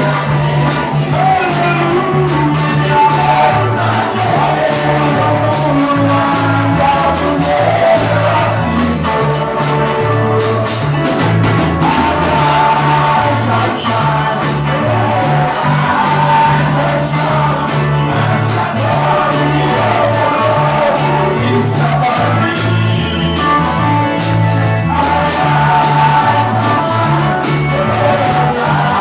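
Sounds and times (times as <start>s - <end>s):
band playing worship song: 0.0s - 29.0s
bass line: 0.0s - 29.0s.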